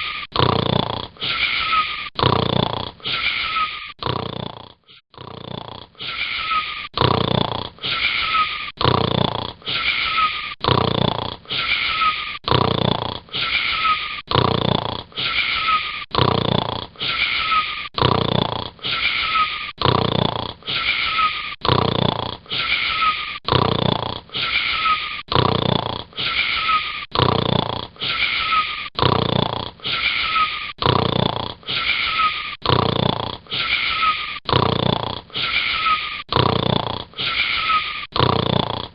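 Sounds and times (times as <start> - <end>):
wheezing snoring: 0.0 - 38.9.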